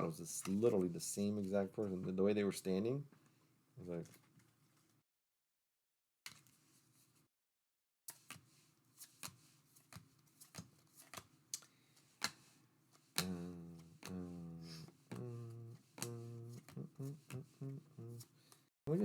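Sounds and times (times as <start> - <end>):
cards clicking and snapping: 9.0 - 14.2.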